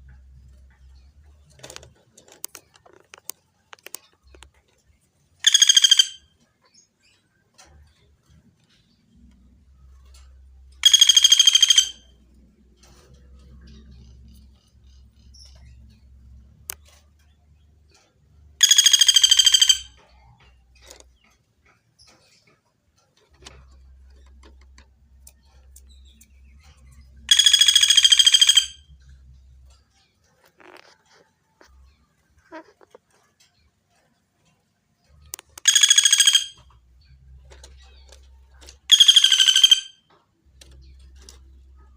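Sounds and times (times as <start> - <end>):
woodpecker trilling call: 5.4 - 6.4, 10.8 - 12.3, 17.9 - 22.3, 24.2 - 29.2, 35.3 - 40.1.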